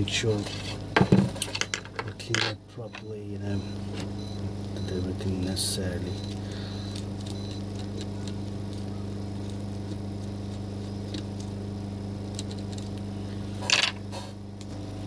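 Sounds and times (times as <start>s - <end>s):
workbench equipment humming: 0.0s - 15.0s.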